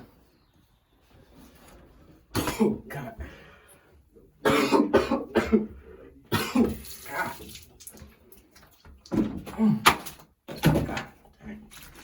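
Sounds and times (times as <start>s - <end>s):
person coughing: 2.4s - 3.2s, 4.4s - 6.9s.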